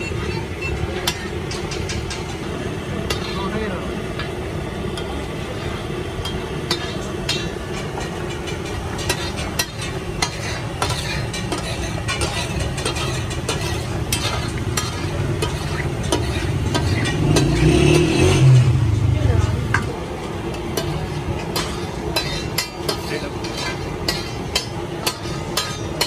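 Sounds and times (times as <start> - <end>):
metal spatula scraping a pan: 0.7 - 3.6, 4.2 - 26.0
liver sizzling in a pan: 4.0 - 18.2
low steady rumble: 14.0 - 21.8.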